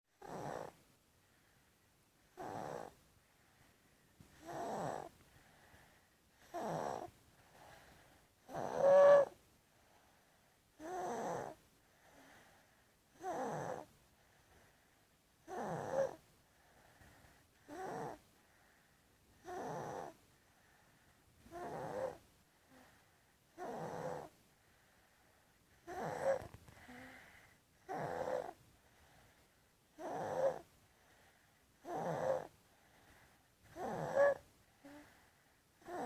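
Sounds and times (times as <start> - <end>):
toddler snoring: 0.2 - 0.8, 2.3 - 3.0, 4.3 - 9.4, 10.8 - 13.9, 15.4 - 18.2, 19.3 - 20.8, 21.4 - 24.4, 25.8 - 29.4, 30.0 - 36.0
faint breathing: 2.8 - 8.4, 11.8 - 12.9, 16.5 - 17.6, 18.4 - 19.1, 20.4 - 21.3, 22.1 - 23.4, 24.6 - 29.7, 30.8 - 31.7, 32.3 - 36.0.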